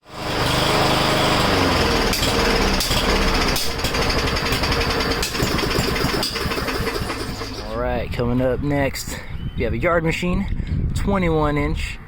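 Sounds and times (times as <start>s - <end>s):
lawn mower engine running: 0.0s - 8.0s
engine popping: 0.2s - 8.1s.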